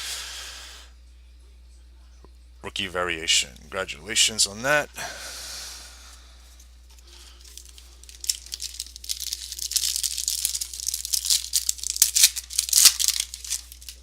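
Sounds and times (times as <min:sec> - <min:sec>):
wrapper tearing and crinkling: 0:07.2 - 0:14.0.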